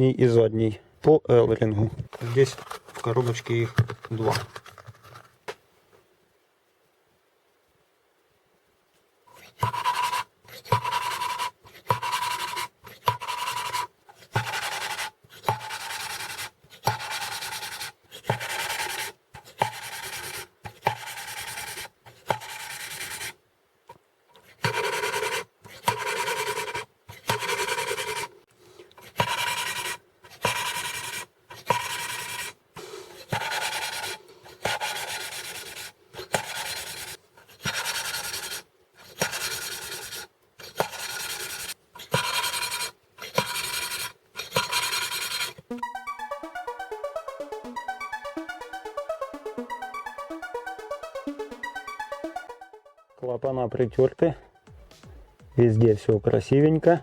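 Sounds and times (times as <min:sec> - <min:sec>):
valve lapping grinding: 0:09.3 - 0:23.4, 0:29.0 - 0:32.6, 0:33.2 - 0:45.7.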